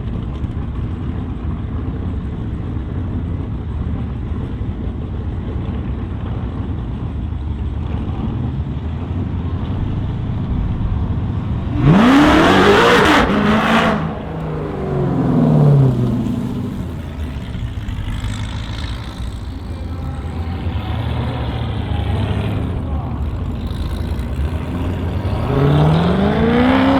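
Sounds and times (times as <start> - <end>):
car engine rumbling: 0.0 - 26.9
car accelerating hard: 7.8 - 26.9.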